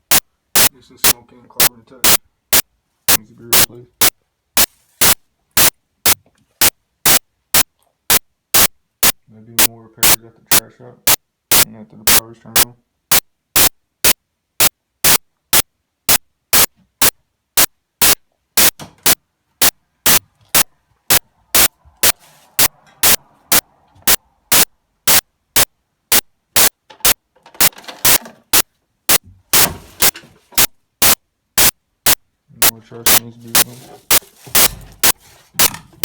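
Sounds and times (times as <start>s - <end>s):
sharp glitch clicks: 0.0s - 4.1s, 5.0s - 5.7s, 6.6s - 9.2s, 10.0s - 29.7s, 30.6s - 35.7s
faint noise: 28.1s - 36.0s.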